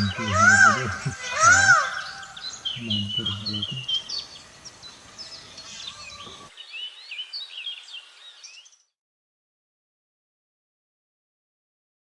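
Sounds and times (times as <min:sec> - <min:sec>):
light background hiss: 0:00.0 - 0:06.5
birds chirping and whistling: 0:00.0 - 0:08.8.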